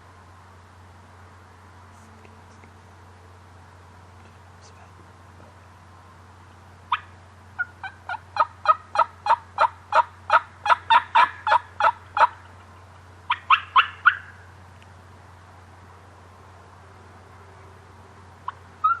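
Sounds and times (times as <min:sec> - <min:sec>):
turkey yelping: 0:06.9 - 0:14.4, 0:18.4 - 0:19.0.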